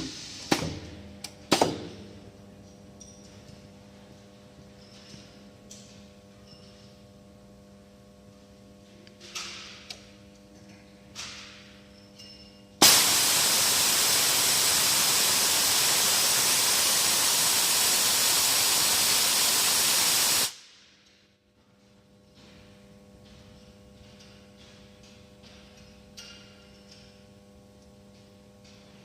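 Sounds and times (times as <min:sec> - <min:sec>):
faint machine hum: 0:00.0 - 0:29.0
welding arc hissing: 0:12.8 - 0:20.6.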